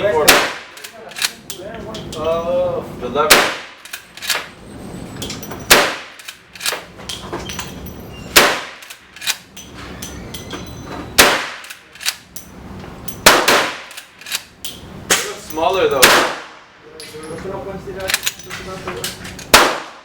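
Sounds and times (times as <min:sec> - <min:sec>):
carbine gunshots with echo: 0:00.2 - 0:00.8, 0:03.3 - 0:03.9, 0:05.7 - 0:06.4, 0:08.4 - 0:09.0, 0:11.2 - 0:11.8, 0:13.2 - 0:14.0, 0:16.0 - 0:16.7, 0:19.5 - 0:20.0.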